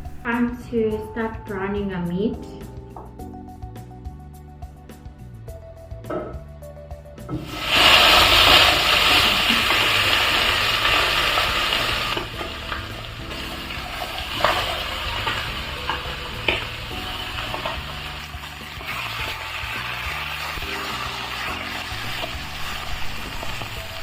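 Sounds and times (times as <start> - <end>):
chicken sizzling in oil: 7.3 - 24.0.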